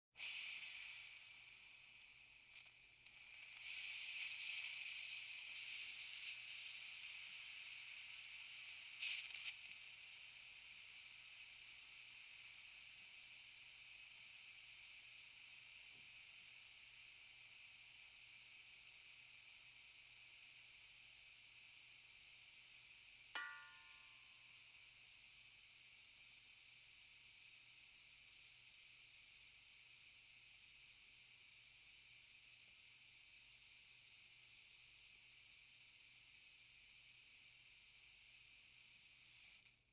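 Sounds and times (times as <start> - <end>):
short ringing ping: 23.4 - 24.4.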